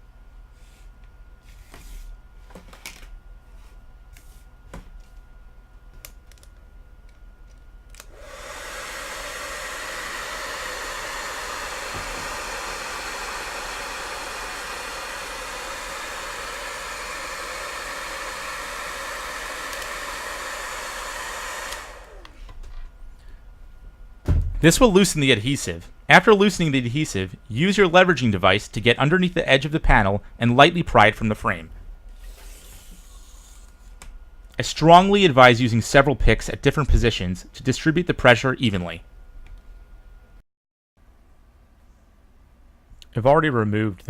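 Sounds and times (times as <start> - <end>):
hair dryer running: 7.9 - 22.8.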